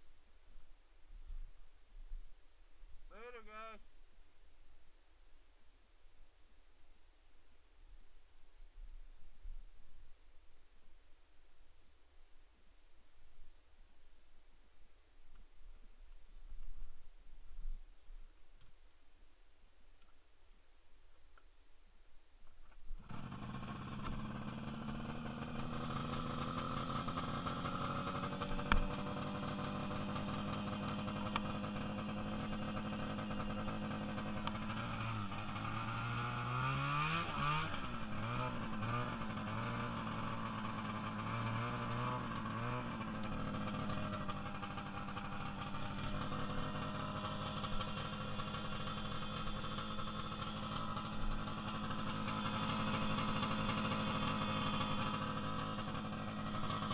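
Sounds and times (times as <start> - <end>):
small engine starting and revving: 23.0 - 56.9.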